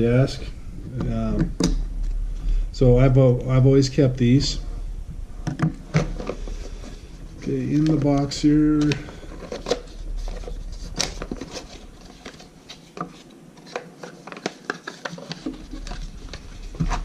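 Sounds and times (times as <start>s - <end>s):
packaging rustling: 5.8s - 17.0s.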